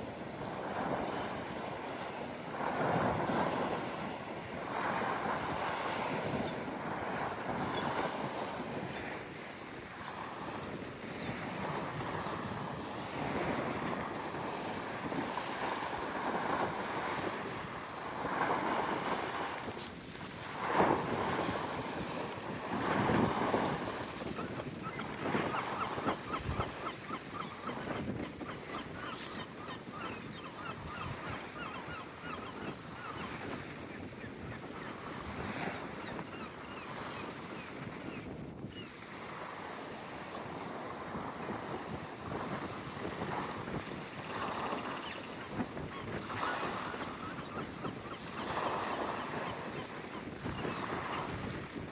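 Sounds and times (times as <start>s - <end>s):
wind buffeting microphone: 0.0s - 51.9s
sea waves washing in: 1.4s - 30.2s
birds calling: 22.4s - 33.8s.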